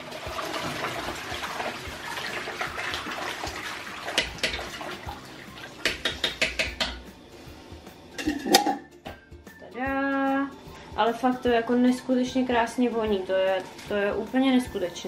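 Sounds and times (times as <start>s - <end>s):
toilet flushing: 0.0s - 6.1s.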